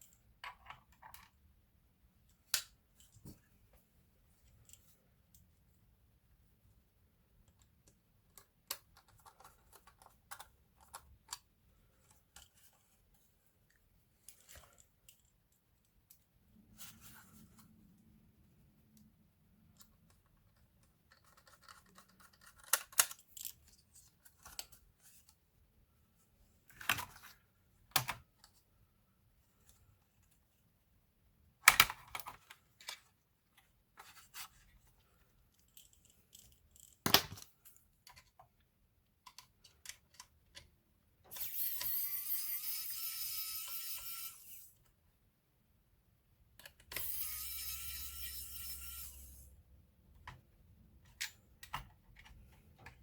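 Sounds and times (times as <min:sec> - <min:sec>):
clicks of small parts and tools: 0:07.4 - 0:12.9, 0:19.7 - 0:25.4, 0:31.6 - 0:34.6, 0:35.5 - 0:38.5, 0:39.2 - 0:40.7, 0:41.3 - 0:44.9, 0:46.6 - 0:49.4, 0:51.0 - 0:53.0.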